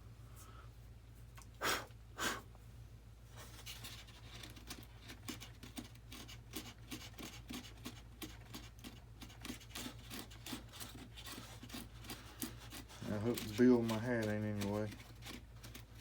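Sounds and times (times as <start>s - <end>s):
low steady hum: 0.0s - 16.0s
hand tool scraping foam: 3.4s - 16.0s.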